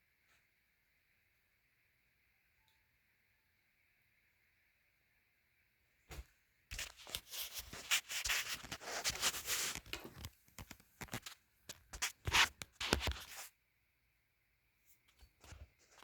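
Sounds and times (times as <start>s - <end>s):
rubbing and scratching: 6.7s - 13.5s, 15.3s - 16.0s.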